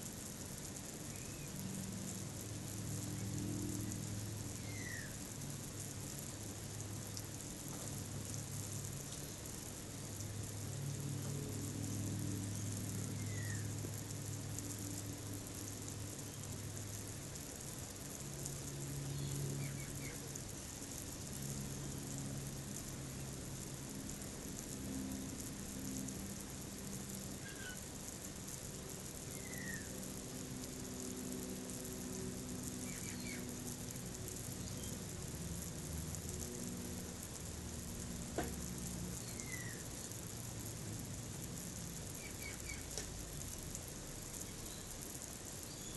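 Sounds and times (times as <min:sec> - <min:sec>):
garden hose spraying water: 0:00.0 - 0:45.9
low steady hum: 0:00.0 - 0:45.9
faint bird chirps: 0:01.0 - 0:01.6, 0:04.6 - 0:05.2, 0:13.1 - 0:13.7, 0:27.4 - 0:27.8, 0:29.3 - 0:29.9, 0:32.8 - 0:33.5, 0:39.2 - 0:40.0, 0:42.2 - 0:43.0, 0:44.4 - 0:45.0, 0:45.6 - 0:45.9.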